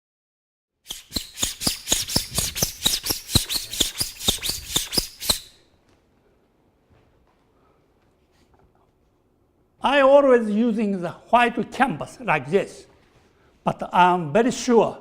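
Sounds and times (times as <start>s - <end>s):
knife scraping on canvas: 0.9s - 5.6s.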